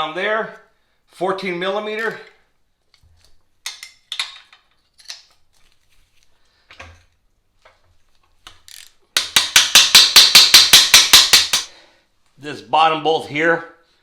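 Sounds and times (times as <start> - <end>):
ratchet wrench clicking: 8.7 - 11.7.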